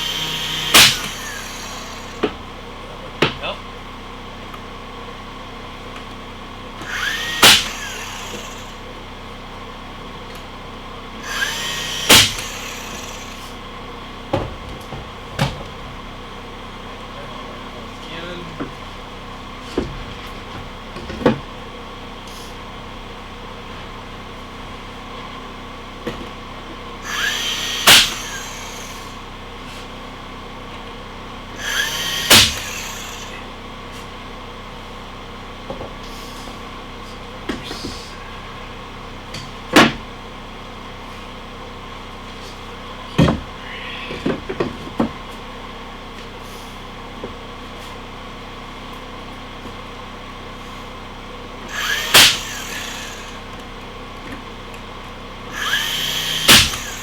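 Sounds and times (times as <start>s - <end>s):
power tool driving fasteners: 0.0s - 2.4s, 6.8s - 8.9s, 11.2s - 13.6s, 27.0s - 29.3s, 31.5s - 33.5s, 51.6s - 53.7s, 55.4s - 57.0s
steady background hum: 0.0s - 57.0s.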